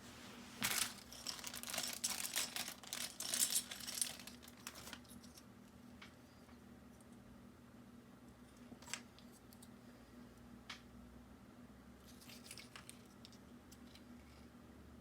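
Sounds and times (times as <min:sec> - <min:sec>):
packaging rustling and crinkling: 0:00.0 - 0:05.1
light clinks of small parts: 0:00.6 - 0:05.5.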